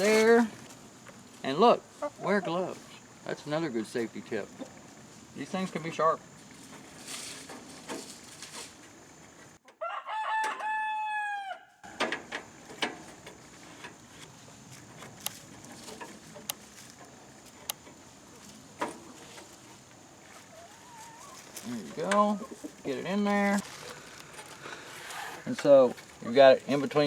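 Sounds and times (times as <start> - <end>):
rooster crowing: 9.7 - 12.0.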